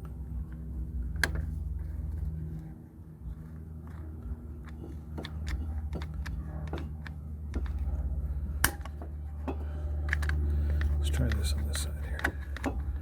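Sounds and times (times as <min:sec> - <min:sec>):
steady low hum: 0:00.0 - 0:13.0
metal tool clicks and taps: 0:04.6 - 0:07.9.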